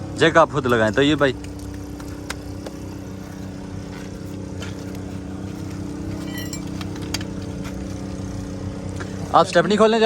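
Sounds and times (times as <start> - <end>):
engine idling: 0.0 - 10.0
metallic clink: 6.2 - 6.9.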